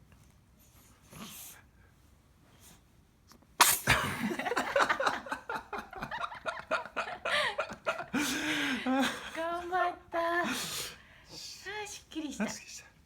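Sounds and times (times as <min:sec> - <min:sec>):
baby sneezing: 0:03.6 - 0:04.2
faint breaths: 0:07.2 - 0:09.0.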